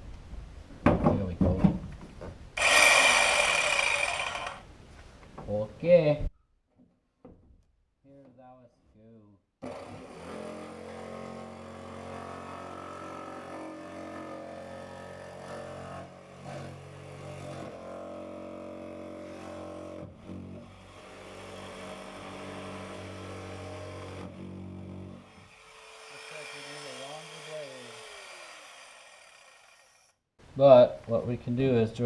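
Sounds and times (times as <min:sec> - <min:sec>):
electric saw cutting wood: 0:02.6 - 0:04.6, 0:09.6 - 0:30.2.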